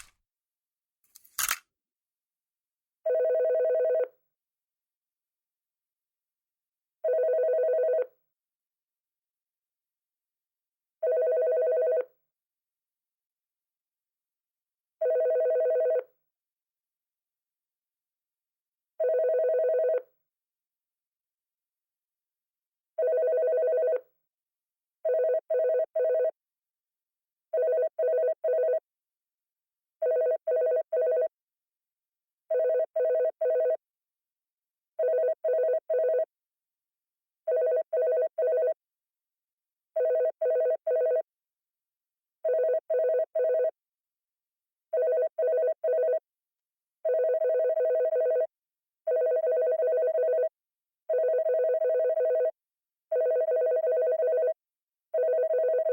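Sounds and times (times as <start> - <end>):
electronic telephone ringing: 3.0 - 4.0, 7.0 - 8.0, 11.0 - 12.0, 15.0 - 16.0, 19.0 - 20.0, 23.0 - 24.0, 25.1 - 26.3, 27.6 - 28.8, 30.0 - 31.3, 32.5 - 33.8, 35.0 - 36.3, 37.5 - 38.8, 40.0 - 41.2, 42.4 - 43.7, 45.0 - 46.2, 47.0 - 48.5, 49.1 - 50.5, 51.1 - 54.6, 55.2 - 55.9.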